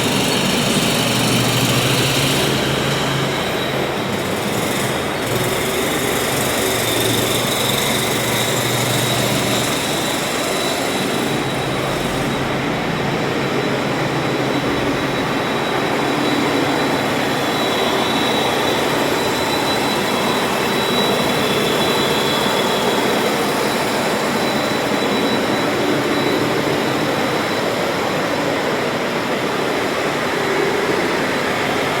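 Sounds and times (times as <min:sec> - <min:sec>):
faint high whine: 0:09.2 - 0:32.0.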